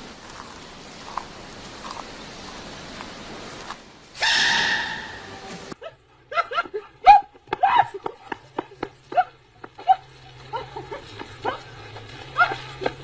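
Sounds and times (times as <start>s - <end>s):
loud hiss: 4.1s - 5.7s
small dog yipping: 4.2s - 5.4s.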